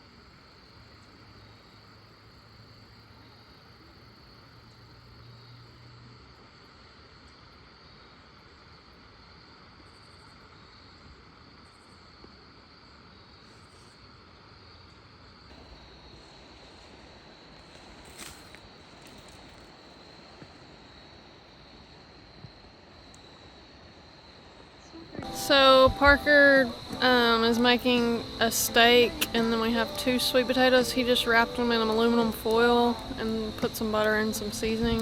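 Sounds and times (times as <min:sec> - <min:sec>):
night insects trilling: 0:00.0 - 0:35.0
low hum: 0:24.7 - 0:35.0.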